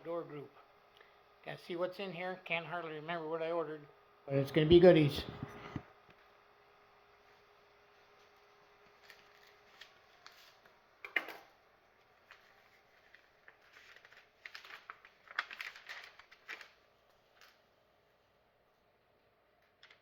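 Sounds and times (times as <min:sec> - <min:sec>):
packaging rustling: 0:08.2 - 0:10.8, 0:12.2 - 0:17.6
package clicks and crinkles: 0:08.9 - 0:10.8, 0:12.2 - 0:17.6, 0:19.6 - 0:20.0.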